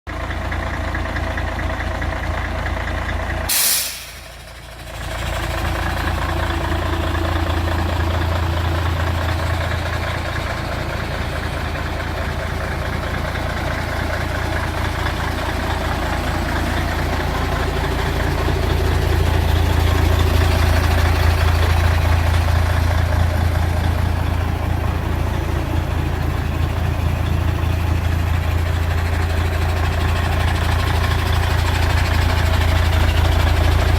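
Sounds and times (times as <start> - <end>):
diesel truck engine idling: 0.1 - 33.9
sharp hiss of air: 3.5 - 4.4.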